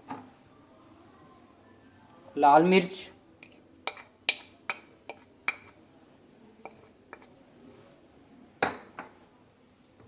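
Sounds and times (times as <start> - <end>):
spoon tapping a bowl: 3.4 - 5.8.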